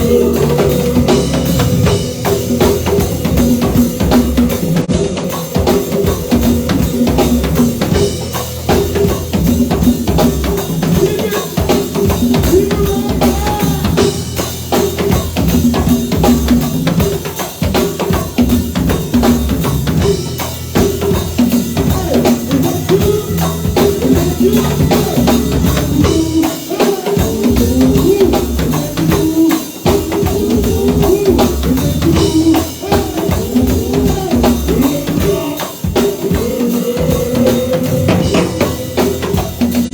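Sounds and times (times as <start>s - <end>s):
drum kit steady beat: 0.0s - 39.9s
live band playing: 0.0s - 39.9s.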